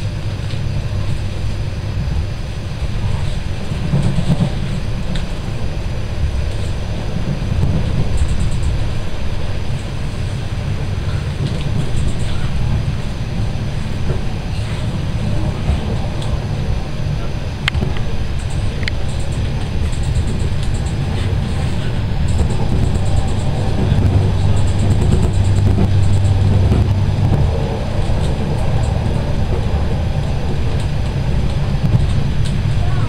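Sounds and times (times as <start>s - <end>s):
passenger train rumbling: 0.0s - 33.0s.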